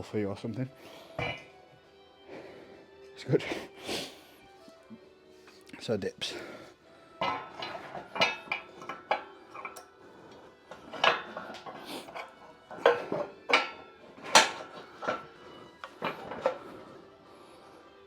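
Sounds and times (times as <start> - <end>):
metal gym equipment clanking: 7.2 - 9.9, 10.7 - 16.7.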